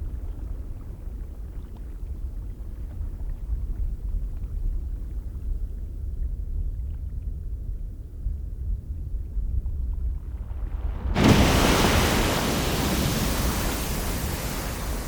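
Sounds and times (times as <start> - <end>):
low steady rumble: 7.4 - 15.0.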